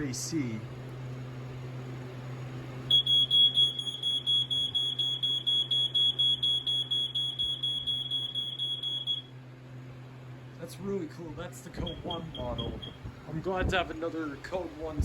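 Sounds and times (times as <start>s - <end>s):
smoke alarm beeping rapidly: 2.9s - 9.3s, 11.7s - 13.1s.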